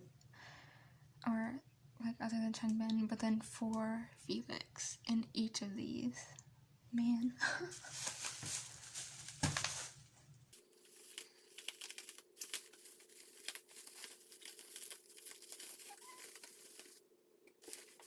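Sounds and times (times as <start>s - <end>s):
packaging crinkling and tearing: 10.6s - 17.0s, 17.6s - 18.0s.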